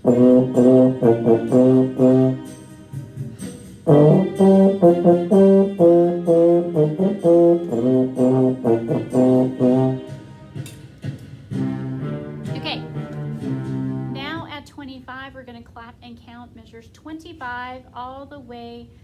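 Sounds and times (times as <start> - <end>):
low brass playing short notes: 0.0 - 10.6, 11.5 - 14.2.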